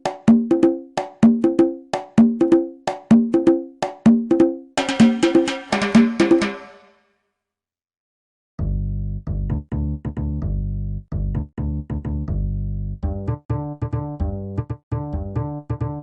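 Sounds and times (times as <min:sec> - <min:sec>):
deep bass: 0:08.6 - 0:16.0.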